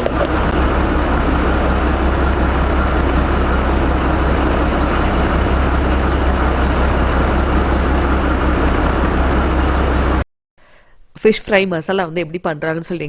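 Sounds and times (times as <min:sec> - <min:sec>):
boat engine droning: 0:00.0 - 0:10.2.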